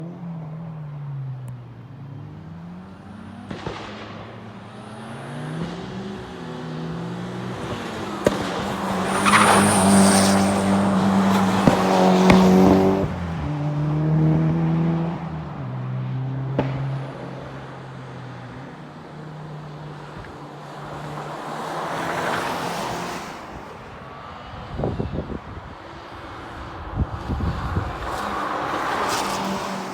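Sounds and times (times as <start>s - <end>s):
car engine revving: 2.3s - 23.6s.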